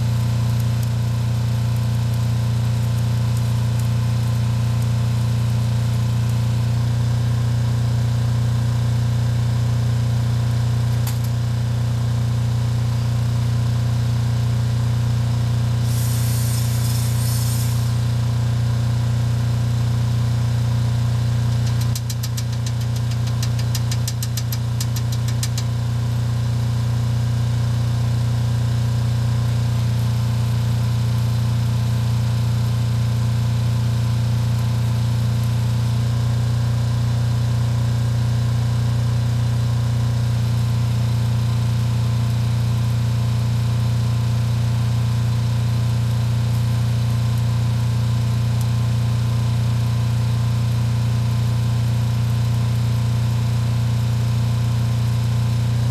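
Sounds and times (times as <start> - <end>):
short hiss: 15.8 - 18.3
rapid sharp ticks: 21.6 - 25.7.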